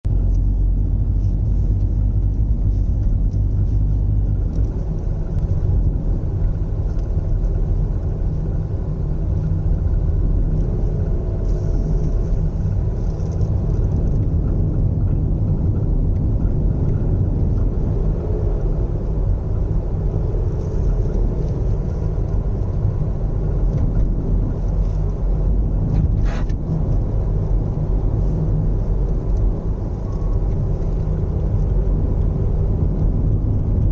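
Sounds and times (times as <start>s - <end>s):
engine and road noise rumble: 0.0s - 33.9s.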